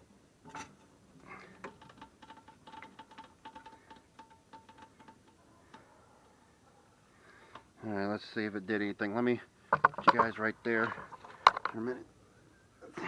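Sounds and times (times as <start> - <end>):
metallic ticking from tool work: 1.6 - 5.4.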